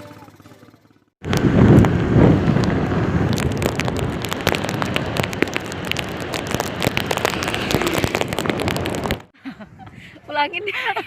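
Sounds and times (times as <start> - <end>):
raindrops tapping: 1.2 - 9.3.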